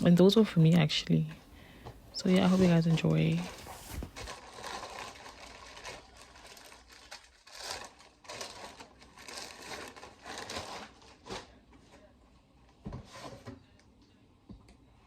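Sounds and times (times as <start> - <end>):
packaging rustling and crinkling: 2.2 - 11.6.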